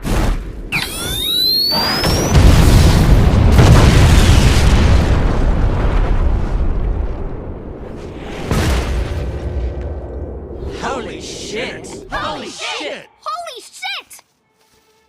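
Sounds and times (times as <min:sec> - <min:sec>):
explosion boom with deep rumble: 0:01.8 - 0:12.1.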